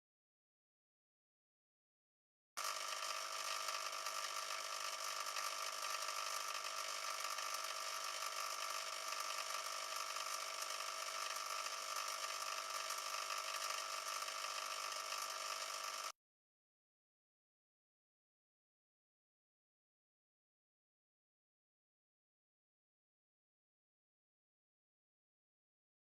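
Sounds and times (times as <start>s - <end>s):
aquarium filter whirring: 2.6s - 16.2s.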